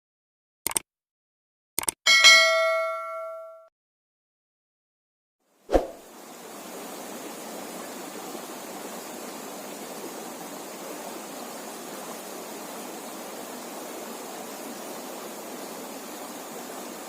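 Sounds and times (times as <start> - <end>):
river water flowing: 5.7 - 17.0.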